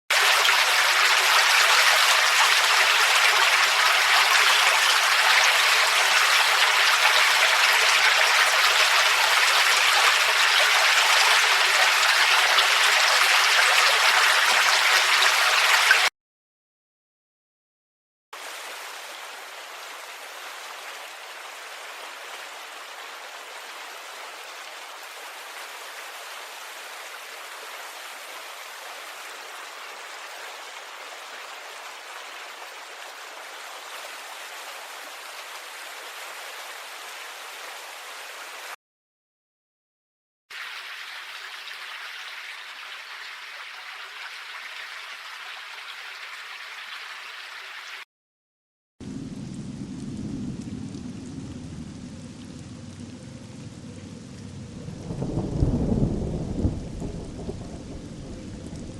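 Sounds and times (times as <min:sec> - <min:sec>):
brighter water flowing: 0:00.1 - 0:16.1, 0:18.4 - 0:38.8, 0:40.5 - 0:48.0
rushing water: 0:00.1 - 0:16.1, 0:18.4 - 0:38.8, 0:40.5 - 0:48.0.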